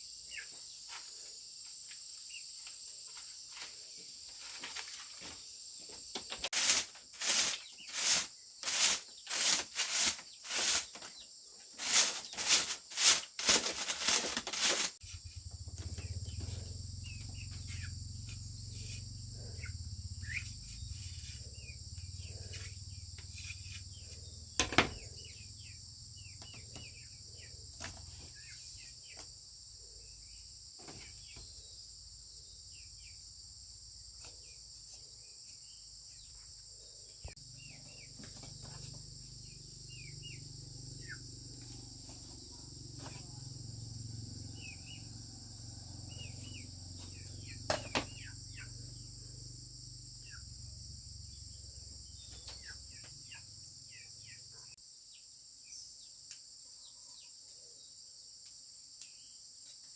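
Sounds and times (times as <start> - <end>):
crickets chirping: 0.0 - 59.9
short bird chirps: 16.1 - 24.4
sharp knocks: 24.6 - 25.0.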